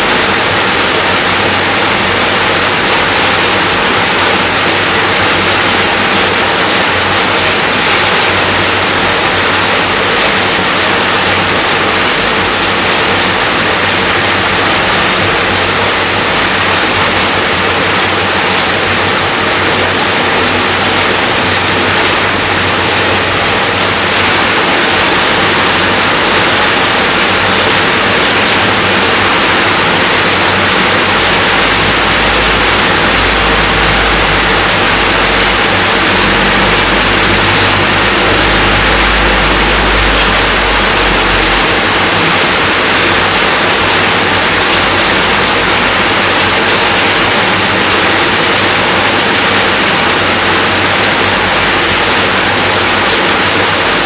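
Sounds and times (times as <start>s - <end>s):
steady rainfall: 0.0s - 54.0s
deep low rumble: 31.0s - 43.3s.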